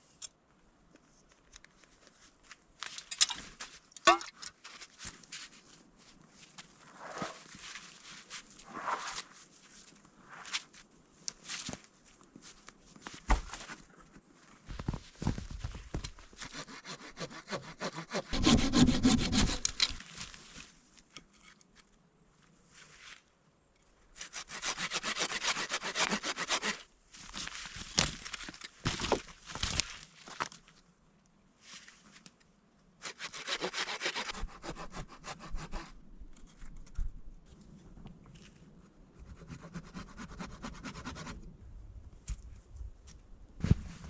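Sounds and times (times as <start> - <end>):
hand saw cutting wood: 16.4 - 20.0, 24.2 - 26.9, 33.0 - 36.0.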